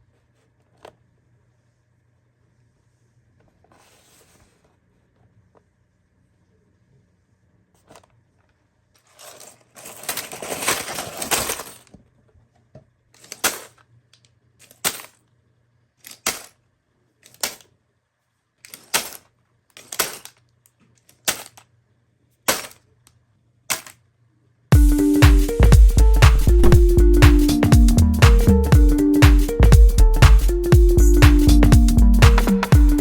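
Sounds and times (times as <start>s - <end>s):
plastic rustling: 9.0s - 12.0s.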